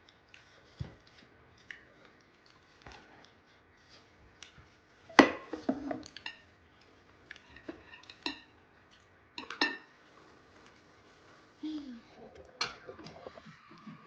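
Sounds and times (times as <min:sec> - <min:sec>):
cutlery clinking against a dish: 0:05.2 - 0:06.4, 0:07.5 - 0:08.5, 0:09.4 - 0:09.9.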